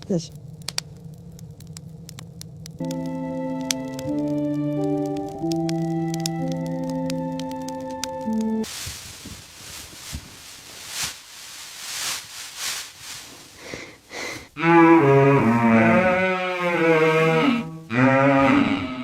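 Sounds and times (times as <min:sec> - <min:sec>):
soft hiss: 0:00.0 - 0:04.8, 0:08.6 - 0:14.6
cattle mooing: 0:14.6 - 0:19.0.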